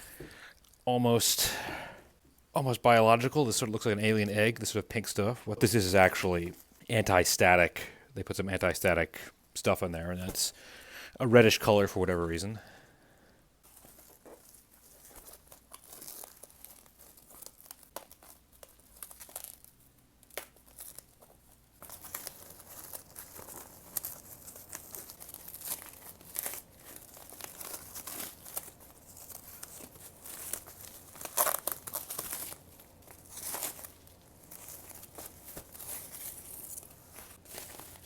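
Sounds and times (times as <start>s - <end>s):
plastic packaging crinkling and tearing: 13.7s - 38.0s.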